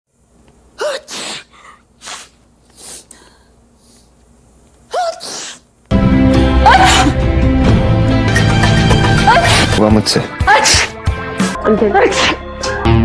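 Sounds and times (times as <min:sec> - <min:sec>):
person sneezing: 0:00.8 - 0:03.0, 0:04.9 - 0:05.7
breathy sounds: 0:00.8 - 0:04.2.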